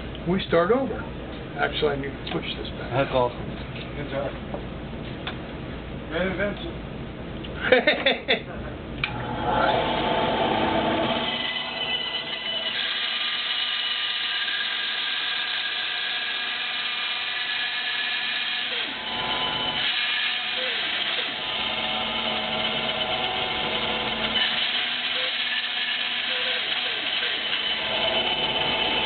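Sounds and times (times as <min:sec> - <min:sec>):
power tool whining while cutting wood: 0:09.1 - 0:29.0.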